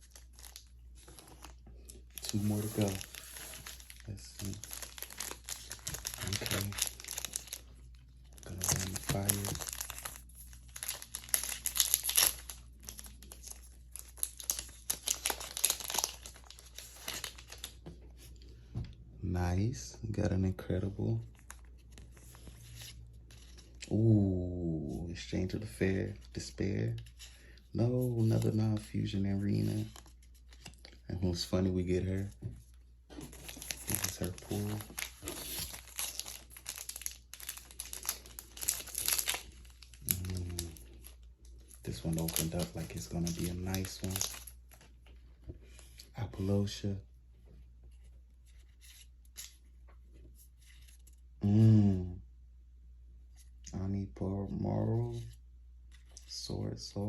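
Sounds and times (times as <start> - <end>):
foil wrapper crinkling: 0.0 - 17.7, 33.2 - 45.2
cards being handled: 0.0 - 18.5, 32.2 - 46.8, 47.8 - 51.3.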